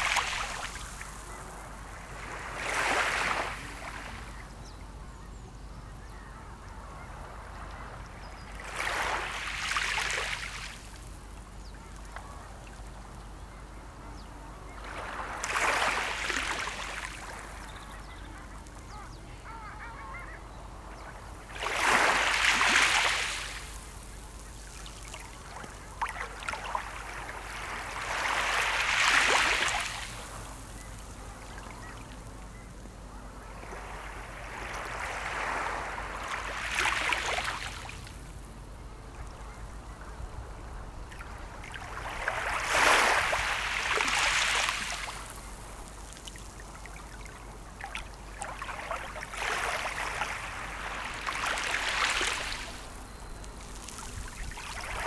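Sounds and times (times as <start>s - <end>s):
sea waves washing onto shore: 0.0s - 4.4s, 14.8s - 18.9s, 20.8s - 32.4s, 33.5s - 38.6s, 41.0s - 55.0s.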